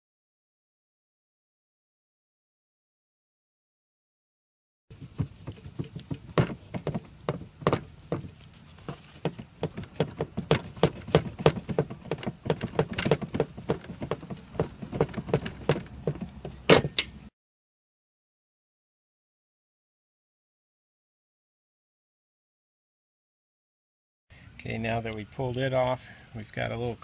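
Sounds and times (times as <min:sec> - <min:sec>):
wiper arm knocking and clattering: 0:05.0 - 0:17.2.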